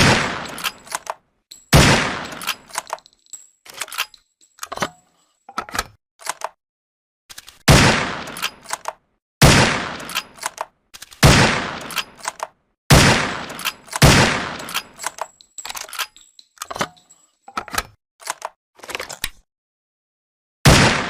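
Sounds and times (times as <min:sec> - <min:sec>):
rifle shots with echo: 0:00.0 - 0:00.9, 0:01.7 - 0:02.7, 0:07.7 - 0:08.6, 0:09.4 - 0:10.4, 0:11.2 - 0:12.0, 0:12.9 - 0:15.0, 0:20.7 - 0:21.0
metallic rifle action clicks: 0:00.3 - 0:06.6, 0:08.3 - 0:09.0, 0:10.0 - 0:11.2, 0:11.8 - 0:12.6, 0:13.4 - 0:18.6.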